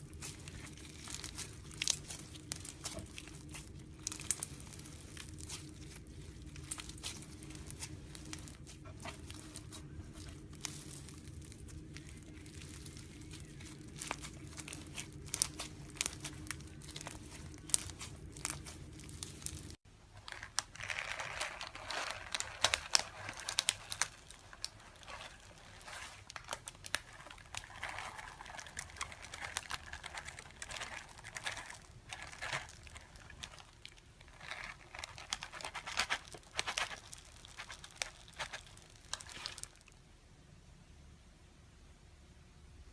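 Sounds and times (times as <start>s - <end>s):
steady low hum: 0.0s - 20.1s
slime crackling and popping: 0.0s - 40.0s.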